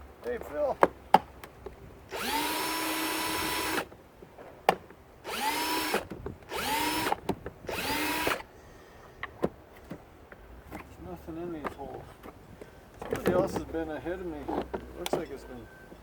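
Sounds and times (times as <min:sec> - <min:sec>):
power drill whirring: 0:02.1 - 0:03.9, 0:05.2 - 0:08.5.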